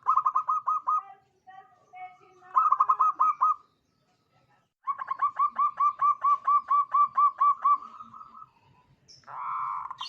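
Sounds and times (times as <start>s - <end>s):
dove cooing: 0.0s - 1.0s, 2.5s - 3.6s, 4.8s - 8.6s, 9.2s - 10.0s.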